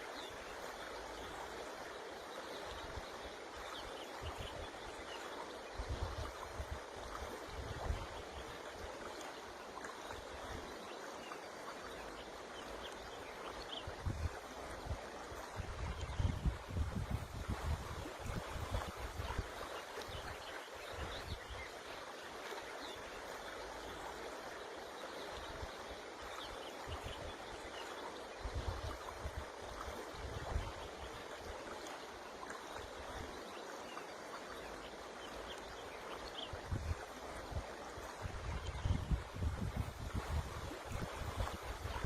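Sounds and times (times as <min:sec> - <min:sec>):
river water rushing: 0:00.0 - 0:42.0
wind rumble on microphone: 0:05.7 - 0:08.5, 0:13.9 - 0:21.7, 0:28.4 - 0:31.6, 0:36.5 - 0:42.0.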